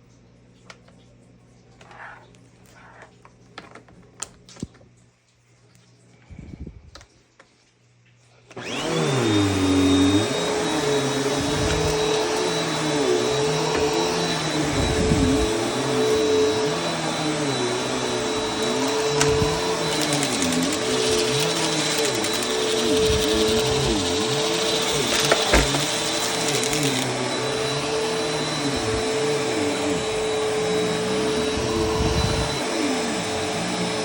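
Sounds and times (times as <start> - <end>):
vacuum cleaner running: 8.5 - 34.0.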